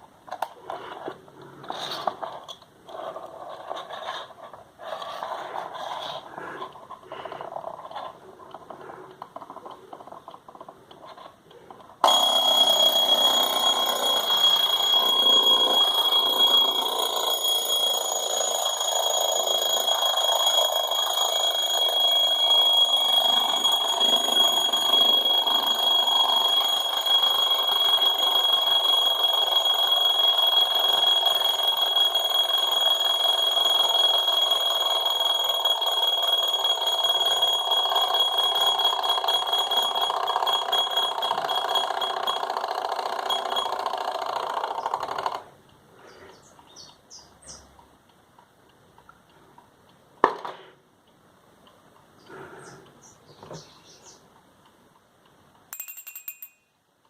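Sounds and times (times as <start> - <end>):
alarm clock ringing: 12.0 - 45.5, 55.7 - 56.7.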